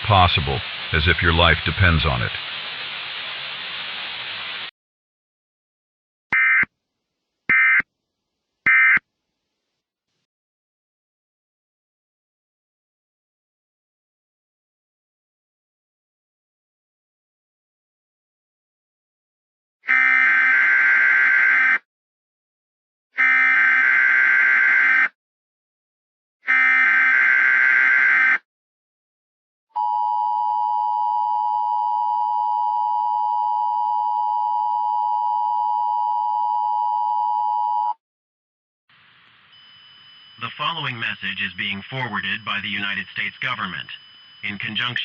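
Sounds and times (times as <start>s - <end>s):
static hiss: 0.0s - 4.7s, 38.9s - 45.0s
electronic data bursts: 39.5s - 45.0s.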